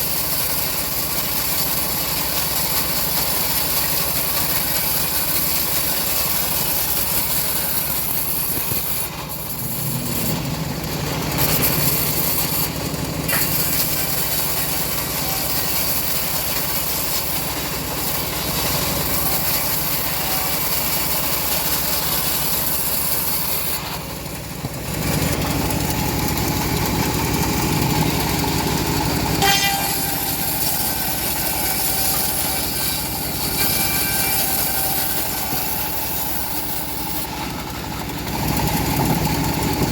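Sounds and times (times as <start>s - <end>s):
bandsaw mill sawing a log: 0.0s - 39.9s.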